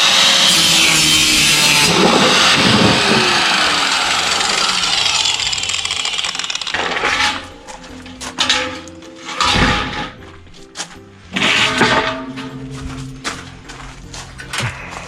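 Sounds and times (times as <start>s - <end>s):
electric power saw cutting: 0.0s - 8.9s.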